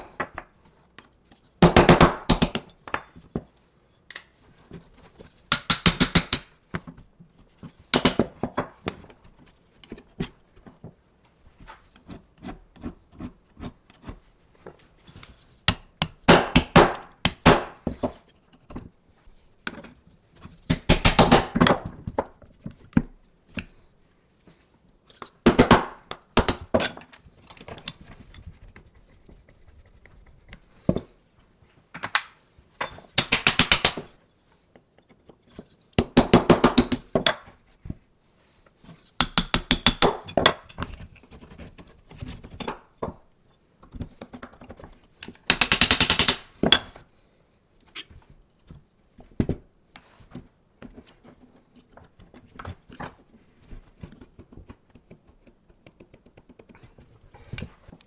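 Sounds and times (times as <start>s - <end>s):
tapping and rubbing: 54.0s - 57.7s.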